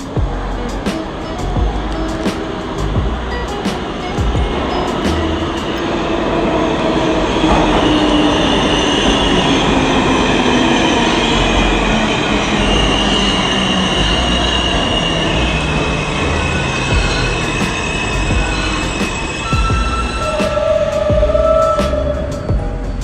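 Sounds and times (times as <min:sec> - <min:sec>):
high wheel squeal: 0:00.0 - 0:23.0
subway train rumbling: 0:00.0 - 0:23.0.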